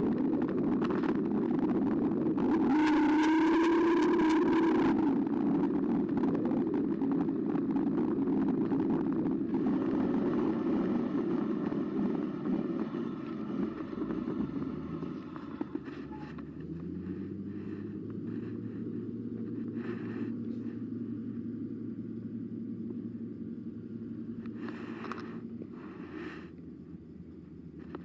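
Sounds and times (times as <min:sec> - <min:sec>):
e-bike drive and tyre rumble: 0:00.0 - 0:28.0
low hum: 0:00.0 - 0:28.0.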